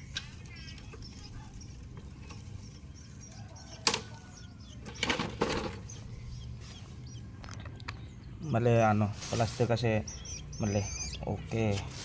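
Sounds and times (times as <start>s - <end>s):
rustling scrapes: 9.1s - 9.9s, 11.6s - 12.0s.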